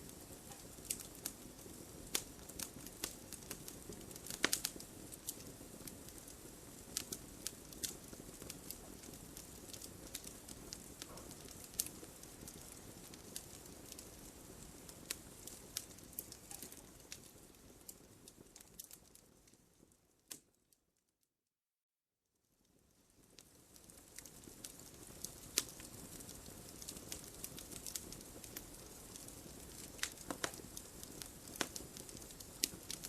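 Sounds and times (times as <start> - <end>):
flames rushing: 0.0 - 17.3, 24.1 - 33.0
fire crackling and popping: 0.0 - 20.7, 22.6 - 33.0.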